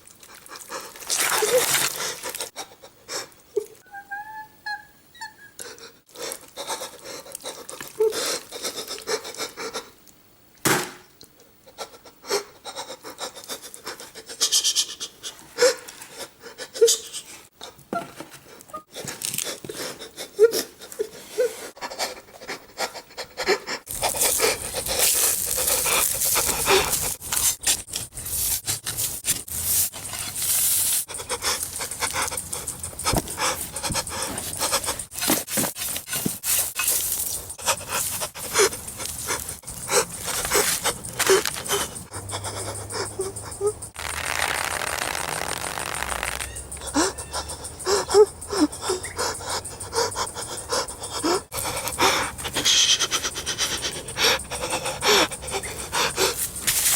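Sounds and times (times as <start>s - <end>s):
man sobbing and panting: 0.7s - 3.8s, 5.6s - 10.0s, 11.6s - 18.1s, 18.8s - 27.2s, 31.1s - 35.2s, 37.6s - 43.8s, 46.8s - 56.5s.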